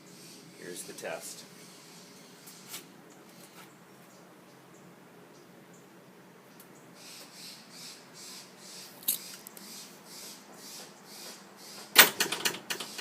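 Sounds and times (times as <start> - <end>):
gate banging shut: 11.9 - 13.0
gate rattling: 12.0 - 13.0.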